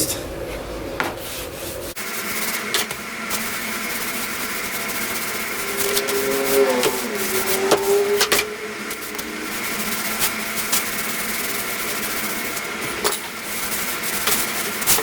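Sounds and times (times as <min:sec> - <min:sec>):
steady hum: 0:00.0 - 0:15.0
sponge rubbing over wood: 0:04.6 - 0:12.4.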